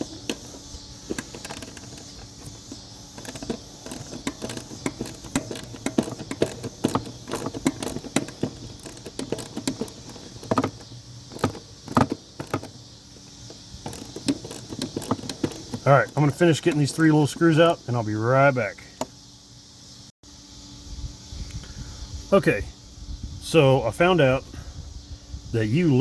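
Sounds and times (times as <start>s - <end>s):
small metallic taps: 0.0s - 12.8s, 13.5s - 17.8s
socket ratchet clicking: 0.0s - 17.8s
insects chirping: 0.0s - 26.0s.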